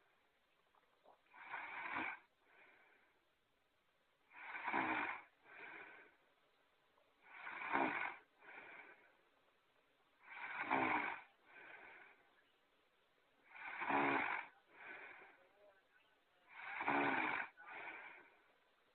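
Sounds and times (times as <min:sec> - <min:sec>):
loud rasping snoring: 0:01.3 - 0:03.0, 0:04.3 - 0:06.1, 0:07.2 - 0:09.1, 0:10.2 - 0:12.2, 0:13.4 - 0:15.5, 0:16.4 - 0:18.4.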